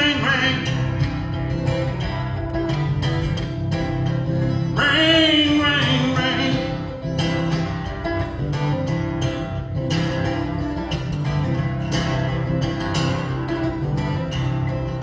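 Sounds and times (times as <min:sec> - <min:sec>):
acoustic guitar playing: 0:00.0 - 0:15.0.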